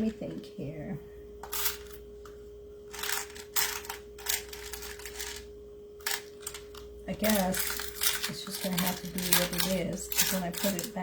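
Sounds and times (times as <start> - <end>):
buttons clicking and rattling: 2.9 - 5.4, 6.0 - 11.0.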